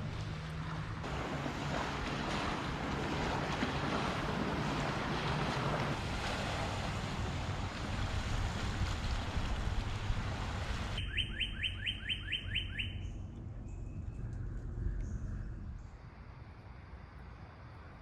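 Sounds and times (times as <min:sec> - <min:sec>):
water noise: 0:00.0 - 0:18.0
wind: 0:00.0 - 0:18.0
low rumble: 0:13.0 - 0:17.4.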